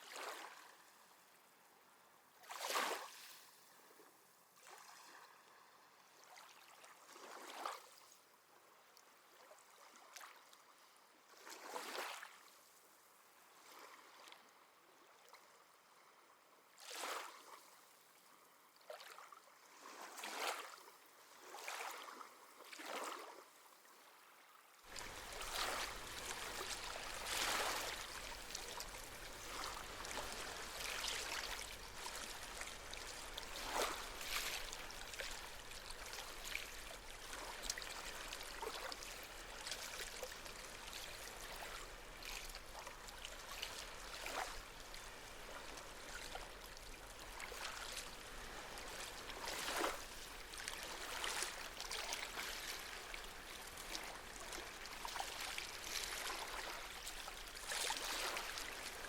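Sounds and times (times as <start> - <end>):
small sea waves washing ashore: 2.4 - 3.6, 24.8 - 59.0.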